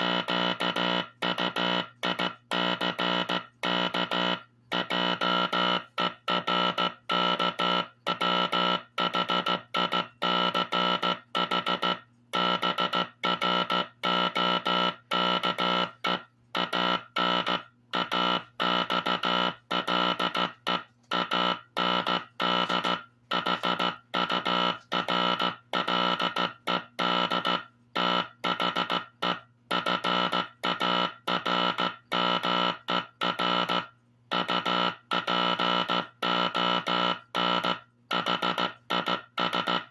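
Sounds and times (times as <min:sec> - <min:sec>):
morse code tone: 0:00.0 - 0:39.9.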